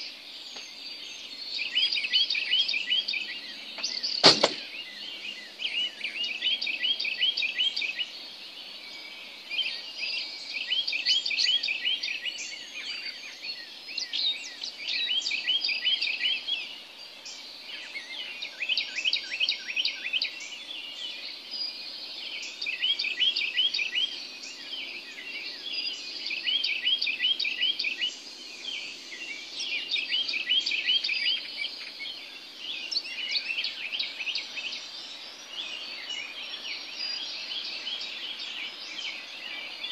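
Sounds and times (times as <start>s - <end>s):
birds chirping: 0.0s - 39.9s.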